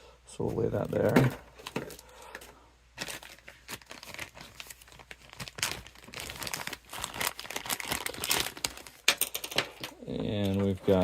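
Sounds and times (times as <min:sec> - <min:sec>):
plastic packaging crinkling: 0:00.7 - 0:11.0.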